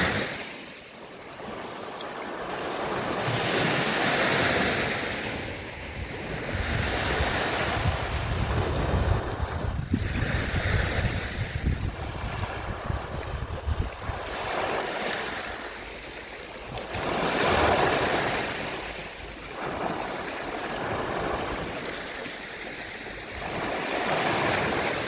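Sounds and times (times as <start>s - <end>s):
sea waves washing onto shore: 0.0s - 25.0s
wind on microphone rumble: 4.9s - 15.9s.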